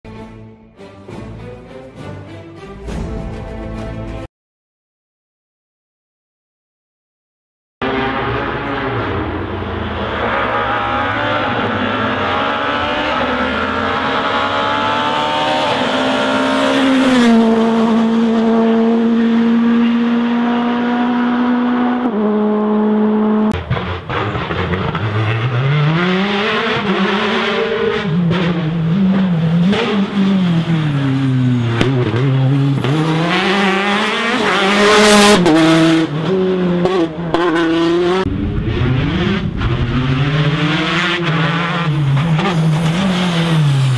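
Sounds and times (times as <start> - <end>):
rally car engine revving: 7.8 - 43.9.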